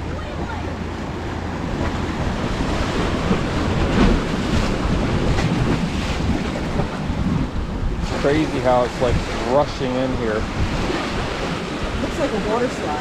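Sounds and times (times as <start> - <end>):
waves crashing on rocks: 0.0 - 13.0
wind buffeting microphone: 0.0 - 13.0.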